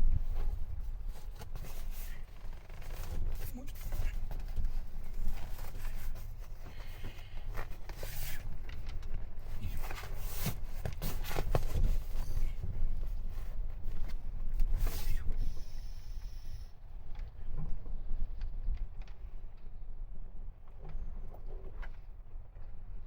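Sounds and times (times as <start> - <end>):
fabric seat cover rustling: 0.2 - 15.5.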